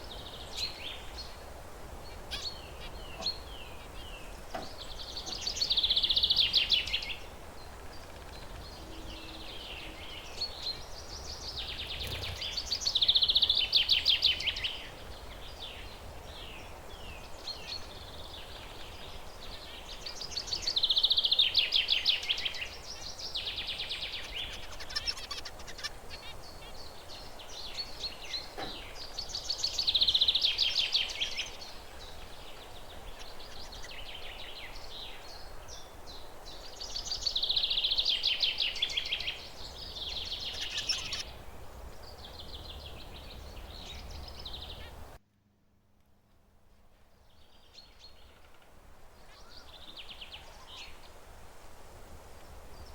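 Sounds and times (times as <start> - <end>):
finch chirps: 8.0 - 35.9, 36.5 - 45.2.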